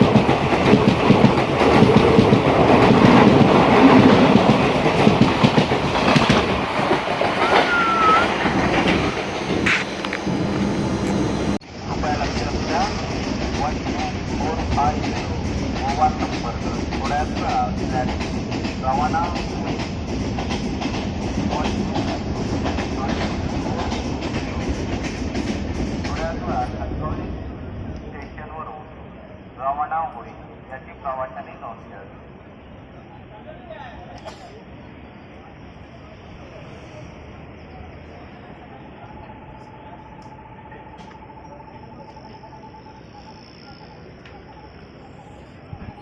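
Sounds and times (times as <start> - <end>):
wheels clattering over rails: 0.0 - 11.6
train wheels clattering on rails: 0.0 - 26.8
thin whistle-like tone: 7.4 - 11.6, 38.1 - 46.0.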